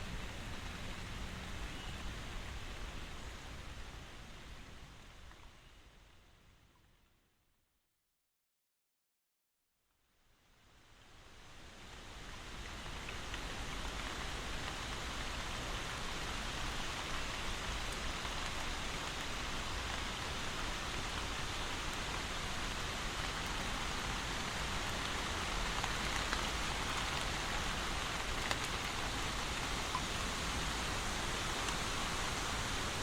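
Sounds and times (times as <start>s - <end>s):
steady rainfall: 0.0s - 6.8s, 10.5s - 33.0s
faint raindrop taps: 28.0s - 30.2s.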